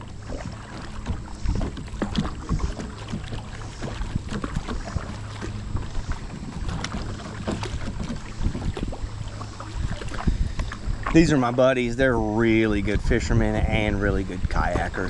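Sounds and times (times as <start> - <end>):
paddle knocks: 0.0 - 11.3
water splashing around kayak: 0.0 - 15.0.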